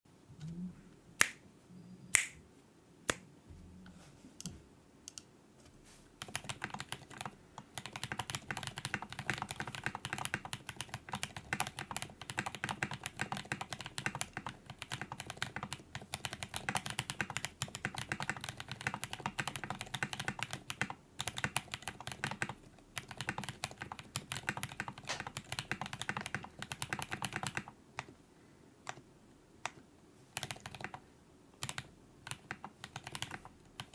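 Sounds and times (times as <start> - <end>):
mechanical keyboard typing: 6.2 - 28.1, 30.4 - 31.0, 31.6 - 33.9.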